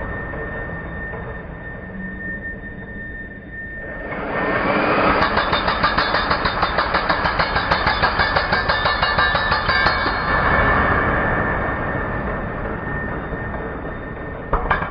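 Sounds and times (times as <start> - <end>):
concrete breaker hammering: 5.1 - 10.4, 14.5 - 14.9.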